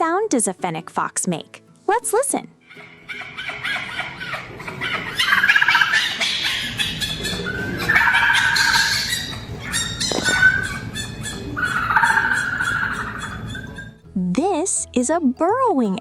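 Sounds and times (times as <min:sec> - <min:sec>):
fox chattering squeals: 0:02.6 - 0:14.0.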